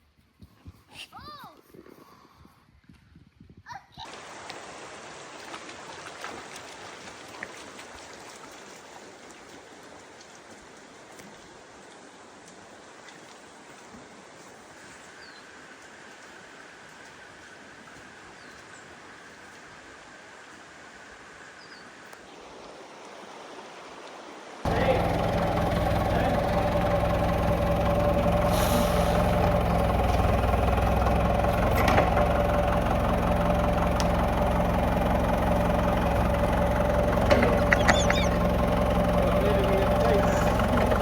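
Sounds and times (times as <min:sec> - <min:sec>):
tractor engine running: 0:24.7 - 0:41.0.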